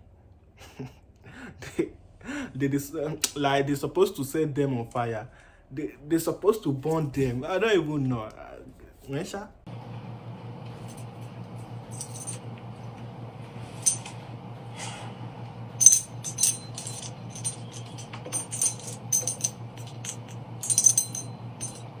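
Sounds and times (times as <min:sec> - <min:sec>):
low electrical hum: 0:00.0 - 0:22.0
light metallic clinks and rattles: 0:10.7 - 0:12.5, 0:13.8 - 0:14.2, 0:15.8 - 0:22.0.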